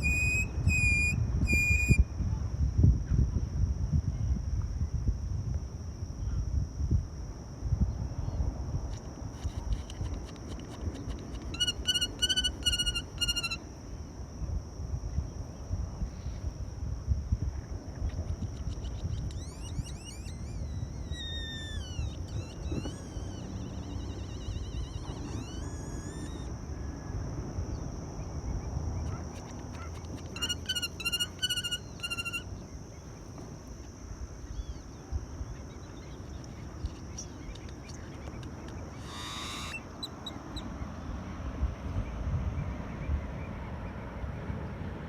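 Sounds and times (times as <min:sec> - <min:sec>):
low rumble of wind and water: 0:00.0 - 0:39.0, 0:39.7 - 0:45.0
thin high tone: 0:09.5 - 0:14.0, 0:18.5 - 0:26.6, 0:29.1 - 0:33.3
waterbirds calling: 0:09.6 - 0:13.6, 0:18.3 - 0:26.5, 0:29.0 - 0:33.3, 0:34.4 - 0:41.4.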